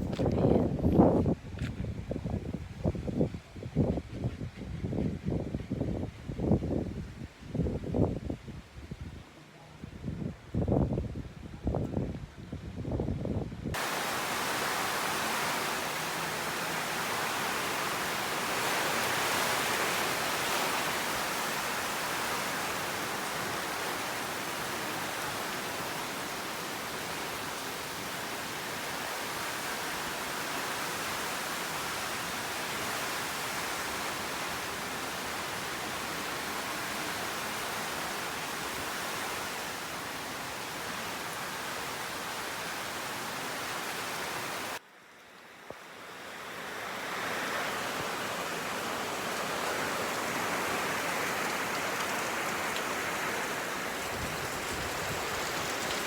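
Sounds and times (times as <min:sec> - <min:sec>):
heavy rain: 0:13.7 - 0:44.8, 0:45.8 - 0:56.0.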